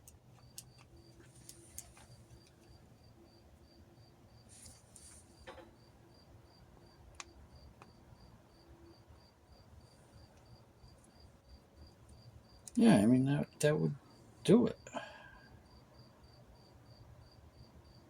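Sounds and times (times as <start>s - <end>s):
faint light clicks: 0.0s - 2.8s
cricket chirping: 0.0s - 18.0s.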